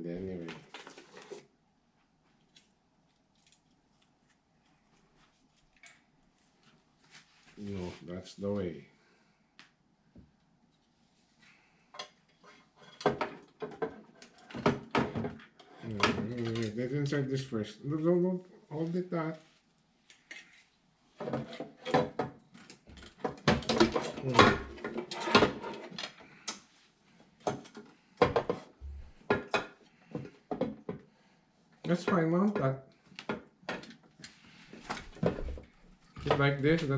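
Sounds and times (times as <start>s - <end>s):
computer parts knocking and clattering: 13.0s - 16.6s, 21.2s - 26.1s.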